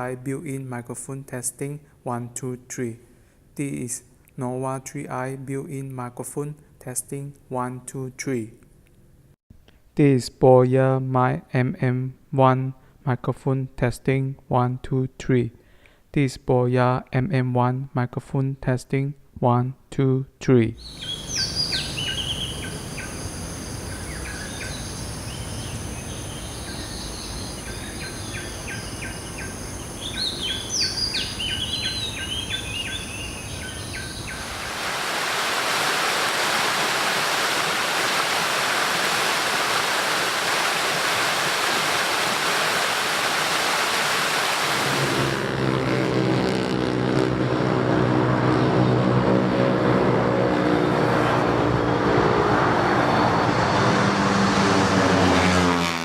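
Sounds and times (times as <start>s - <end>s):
birds chirping and trilling: 20.8s - 34.6s
loud rushing noise: 34.3s - 48.6s
low engine drone: 44.3s - 56.0s.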